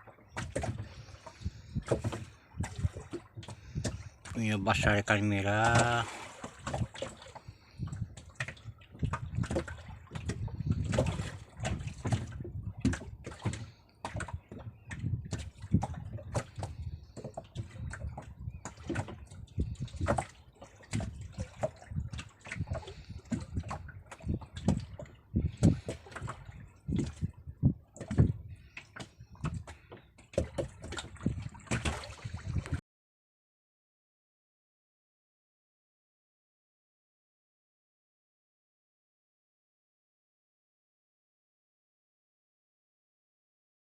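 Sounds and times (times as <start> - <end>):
water sloshing around boat: 0.0 - 32.8.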